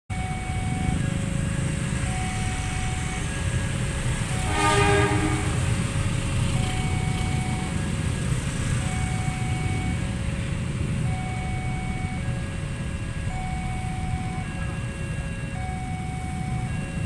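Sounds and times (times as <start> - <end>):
level crossing alarm tones: 0.1 - 17.0
passing train rumble: 0.4 - 17.0
train horn blast: 4.3 - 5.9.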